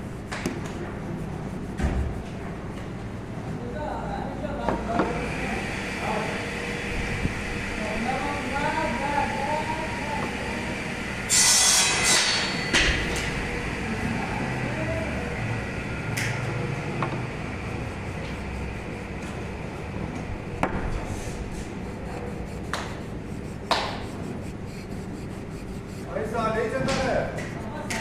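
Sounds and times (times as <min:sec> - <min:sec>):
hammer knocking on wood: 0:20.6 - 0:21.0.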